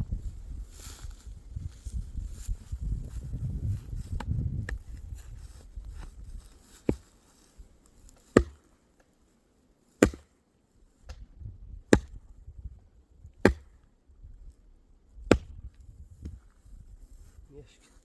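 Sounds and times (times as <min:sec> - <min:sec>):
blade chopping dry wood: 0:06.8 - 0:07.1, 0:08.1 - 0:08.7, 0:10.0 - 0:10.4, 0:11.9 - 0:12.2, 0:13.4 - 0:13.9, 0:15.2 - 0:16.4.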